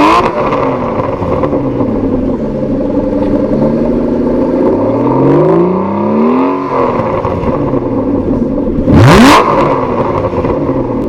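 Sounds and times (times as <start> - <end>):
car engine accelerating: 0.0 - 11.0.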